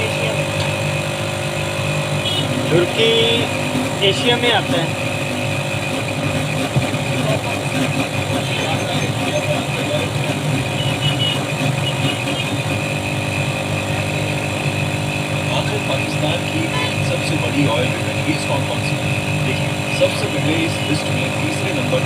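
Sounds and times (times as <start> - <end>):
engine-like hum: 0.0 - 22.0.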